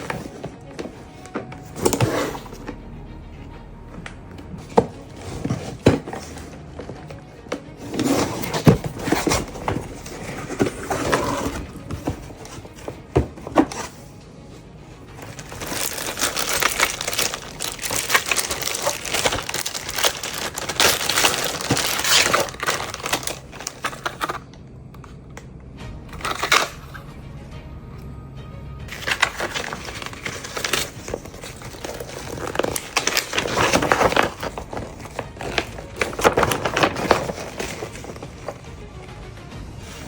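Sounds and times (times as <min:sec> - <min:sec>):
background music: 0:00.0 - 0:40.0
packaging crinkling and rustling: 0:04.6 - 0:14.2, 0:15.1 - 0:24.5, 0:26.2 - 0:26.9, 0:28.9 - 0:38.9.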